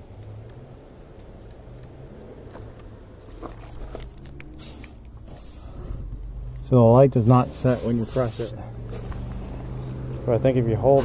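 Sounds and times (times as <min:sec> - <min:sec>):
light clicks and rustling: 0:00.1 - 0:06.2.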